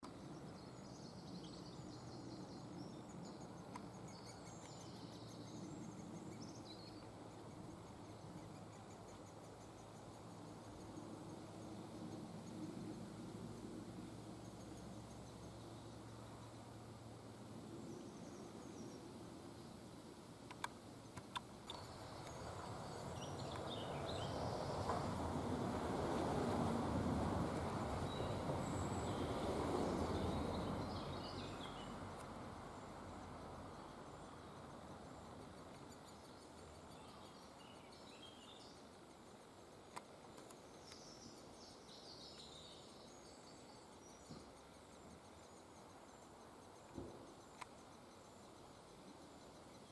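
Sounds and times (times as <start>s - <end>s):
nestlings chirping faintly: 0.0s - 25.1s, 27.4s - 49.9s
background hiss: 0.0s - 49.9s
sharp clicks: 20.4s - 22.4s.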